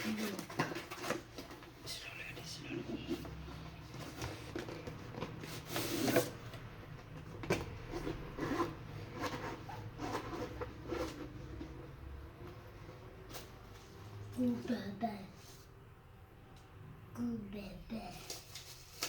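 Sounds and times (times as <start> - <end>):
packaging rustling and scraping: 0.0 - 12.1, 18.1 - 19.0.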